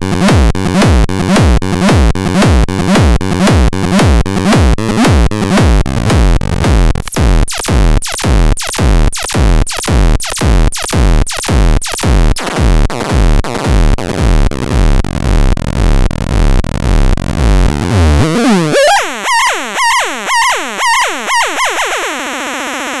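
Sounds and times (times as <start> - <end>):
kick drum: 0.0 - 18.4
bass line: 0.0 - 23.0
high filtered synth pattern: 7.0 - 13.6, 17.4 - 23.0.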